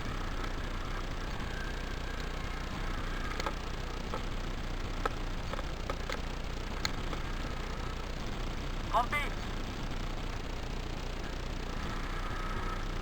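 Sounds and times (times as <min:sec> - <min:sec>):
steady hiss: 0:00.0 - 0:13.0.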